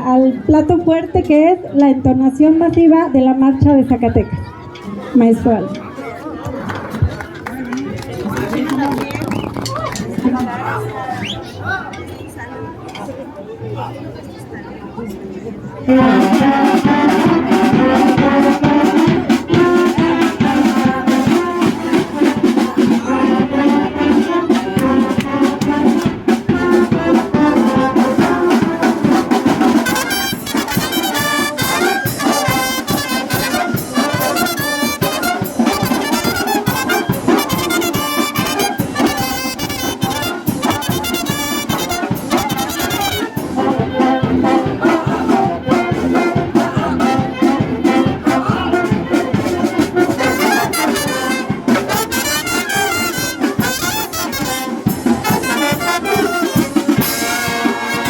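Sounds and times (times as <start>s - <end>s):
wind band playing: 15.8s - 58.0s
steady drum beat: 15.9s - 58.0s
trumpets and trombones: 15.9s - 58.0s.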